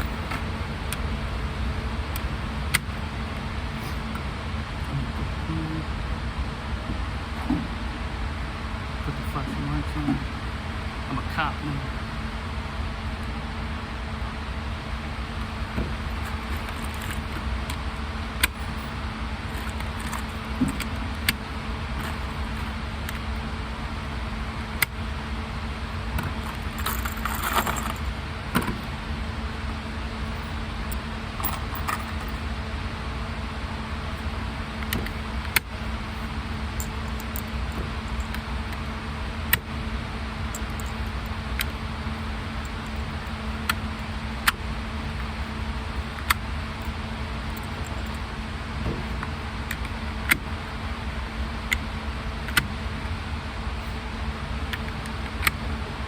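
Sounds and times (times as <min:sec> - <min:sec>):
car road noise rumble: 0:00.0 - 0:56.0
sharp clicks and rattles: 0:15.4 - 0:23.4, 0:26.1 - 0:28.9, 0:30.2 - 0:32.5, 0:40.5 - 0:41.8.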